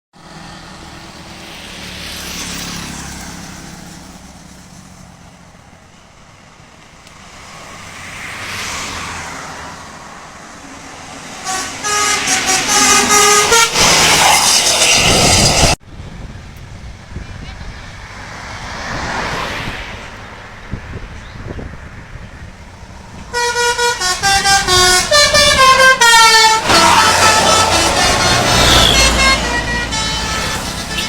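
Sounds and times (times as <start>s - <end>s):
traffic passing: 0.2s - 31.0s
multi-tone bus horn melody: 11.3s - 15.8s, 23.3s - 31.0s.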